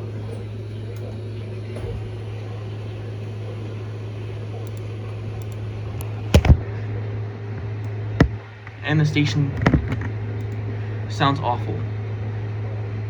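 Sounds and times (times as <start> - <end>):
low electrical hum with hiss: 0.0 - 13.0
sharp knock: 8.2 - 8.4.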